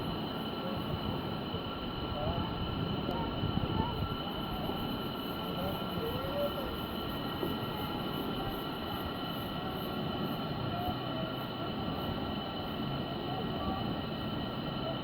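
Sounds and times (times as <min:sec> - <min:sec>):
insects droning high tones: 0:00.0 - 0:15.0
insect pulsing very high: 0:03.7 - 0:14.6.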